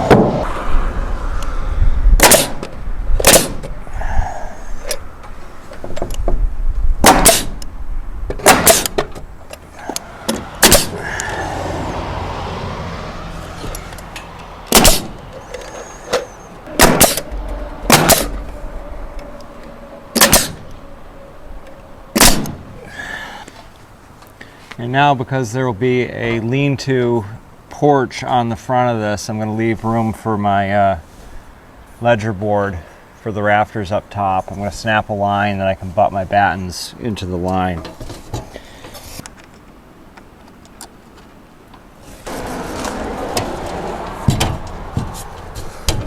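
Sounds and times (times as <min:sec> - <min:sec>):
nail gun shots into wood: 0:02.2 - 0:03.7, 0:07.0 - 0:07.6, 0:08.4 - 0:09.1, 0:10.6 - 0:11.0, 0:14.7 - 0:15.2, 0:16.8 - 0:17.2, 0:17.9 - 0:18.3, 0:20.2 - 0:20.6, 0:22.2 - 0:22.6.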